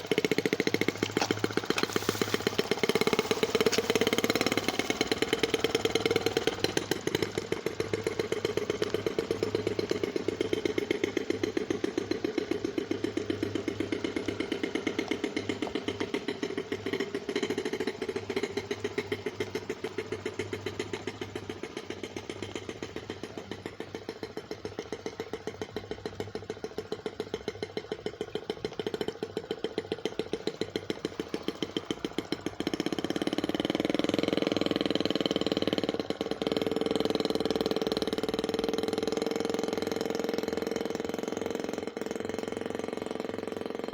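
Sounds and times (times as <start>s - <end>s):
two-stroke boat engine buzzing: 0.0s - 43.9s.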